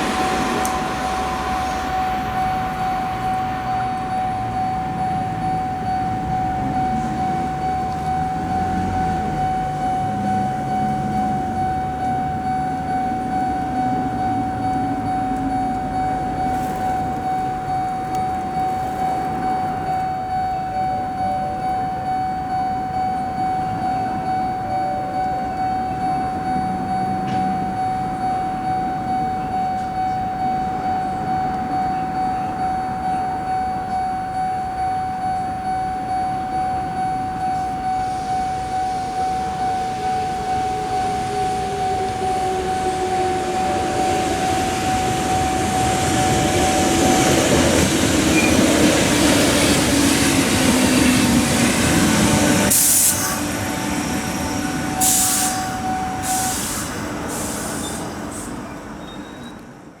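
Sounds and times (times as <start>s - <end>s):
train wheels rushing: 0.0s - 22.2s, 36.9s - 59.6s
level-crossing alarm ringing: 0.0s - 59.5s
train whine falling in pitch: 0.0s - 59.6s.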